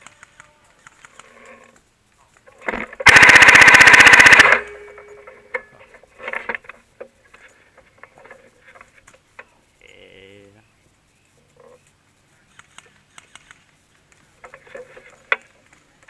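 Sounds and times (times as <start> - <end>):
airsoft gun full-auto burst: 2.9 - 4.8.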